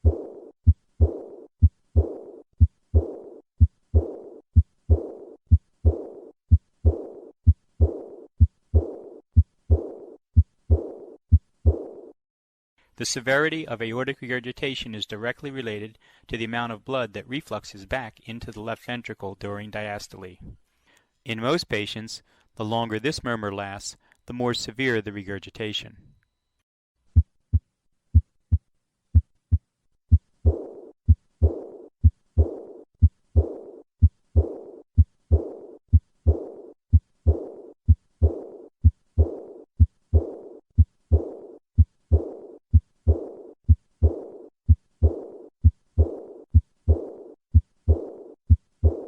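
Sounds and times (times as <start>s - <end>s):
heartbeat low knocks: 0.0s - 12.1s, 27.2s - 49.0s
high-pitched heart murmur: 0.0s - 12.1s, 30.1s - 49.0s.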